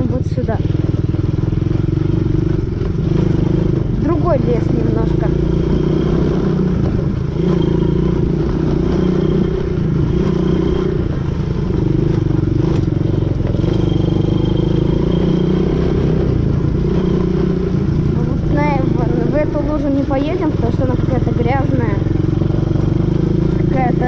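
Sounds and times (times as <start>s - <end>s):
quad bike engine running: 0.0s - 24.0s
knocks and rattles on rough ground: 6.7s - 8.8s, 16.3s - 24.0s.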